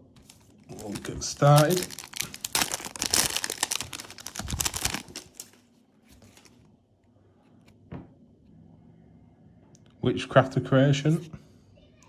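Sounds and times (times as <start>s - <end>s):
foil wrapper crinkling: 0.2s - 6.7s.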